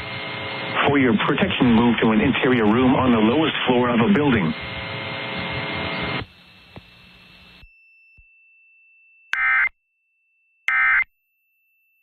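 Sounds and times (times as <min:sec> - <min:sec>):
radio hiss: 0:00.0 - 0:07.6.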